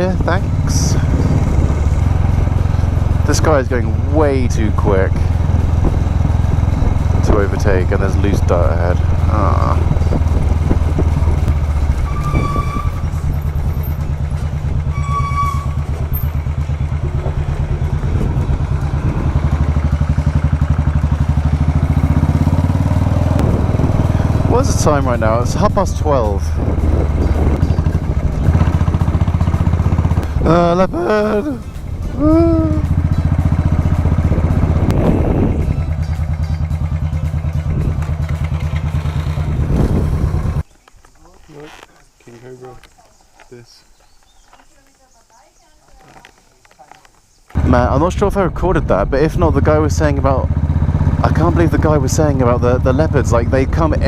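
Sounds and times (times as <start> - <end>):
motorcycle engine thumping: 4.7 - 12.3, 12.9 - 25.7, 26.4 - 41.0
vehicle horn: 11.7 - 14.0, 14.8 - 16.5.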